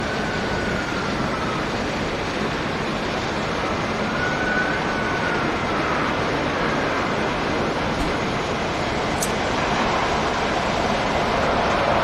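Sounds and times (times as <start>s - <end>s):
faint turbine whine: 0.0s - 12.0s
jet engine rush: 0.0s - 12.0s.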